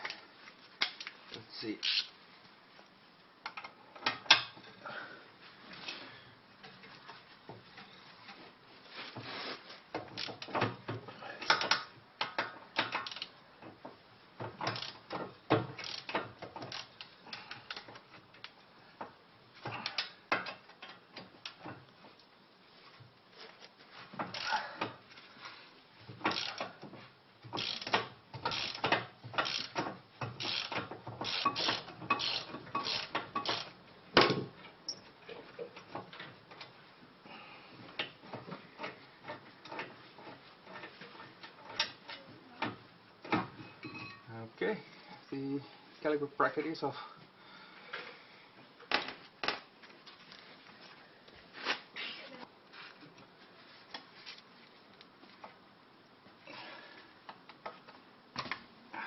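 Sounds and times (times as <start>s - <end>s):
ratchet wrench clicking: 1.8s - 2.1s, 12.8s - 13.3s, 14.6s - 15.2s, 15.8s - 17.9s, 26.3s - 26.7s, 27.6s - 33.8s.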